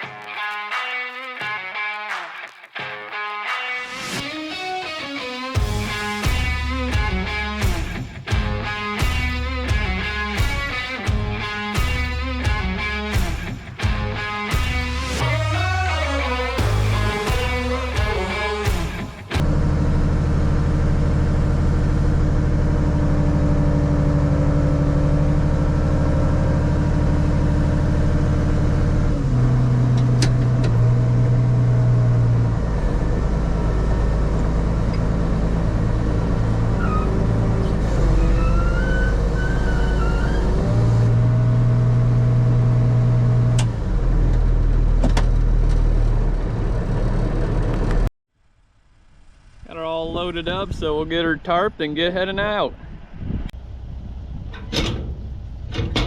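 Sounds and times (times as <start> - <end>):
faint high squeals: 36.8 - 41.0
tractor engine under load: 53.6 - 56.0.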